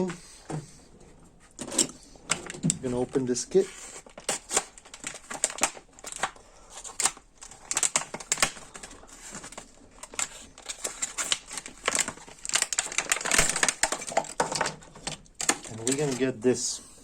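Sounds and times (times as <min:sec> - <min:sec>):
plastic case and tools clicking: 0:04.1 - 0:16.4.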